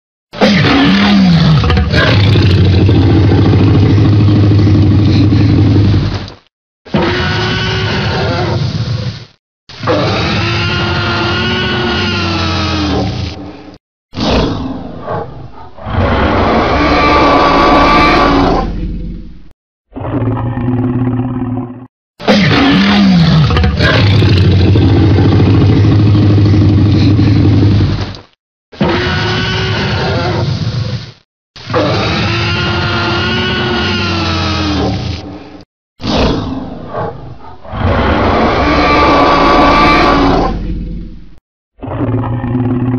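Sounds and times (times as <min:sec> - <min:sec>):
dinosaur roar: 0:00.4 - 0:06.2, 0:09.8 - 0:13.4, 0:14.2 - 0:28.1, 0:31.7 - 0:35.2, 0:36.0 - 0:42.9
low rumbling growl: 0:00.9 - 0:06.3, 0:14.2 - 0:21.9, 0:22.8 - 0:28.2, 0:36.0 - 0:42.9.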